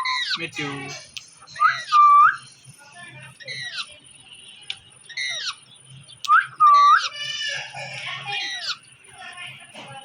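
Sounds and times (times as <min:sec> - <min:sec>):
parrot chirping and squawking: 0:00.0 - 0:02.4, 0:03.4 - 0:04.0, 0:05.1 - 0:08.9.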